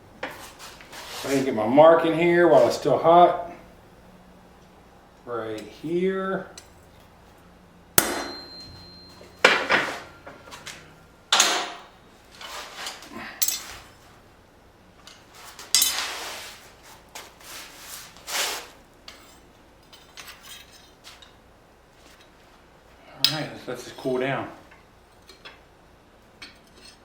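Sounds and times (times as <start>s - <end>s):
hammer striking hot steel: 8.0s - 10.1s, 11.3s - 11.9s.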